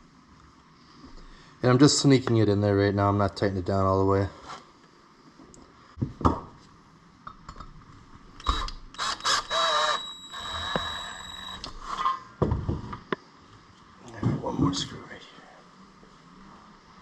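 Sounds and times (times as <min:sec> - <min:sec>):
thin steady high tone: 0:09.5 - 0:11.7.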